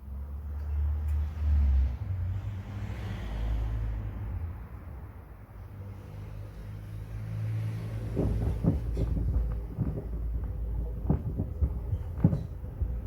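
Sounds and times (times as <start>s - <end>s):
washing machine drum rumble: 7.6s - 13.0s
wood knocking against drum: 8.0s - 13.0s.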